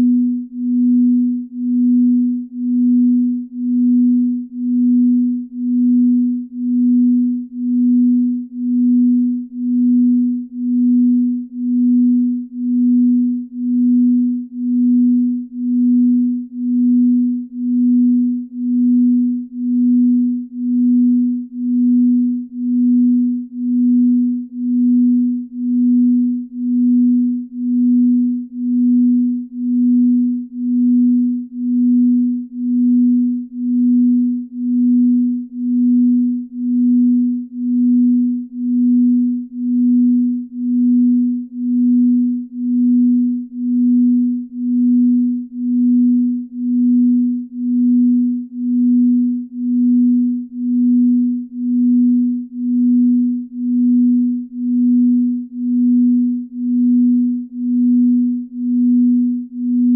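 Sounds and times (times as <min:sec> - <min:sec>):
pulsing low pure tone: 0:00.0 - 0:59.9.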